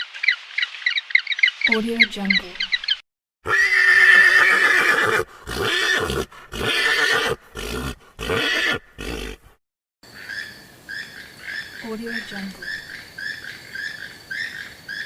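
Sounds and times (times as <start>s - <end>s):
equine animal calling: 3.5s - 9.6s.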